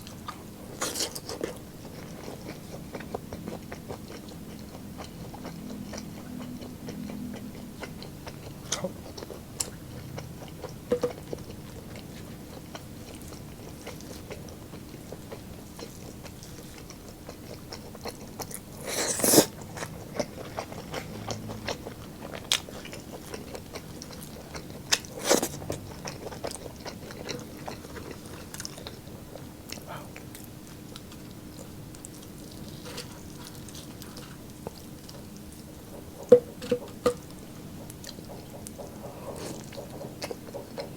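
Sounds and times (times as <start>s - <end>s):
chewing and biting food: 0.0s - 40.9s
wet mouth sounds: 37.8s - 40.9s.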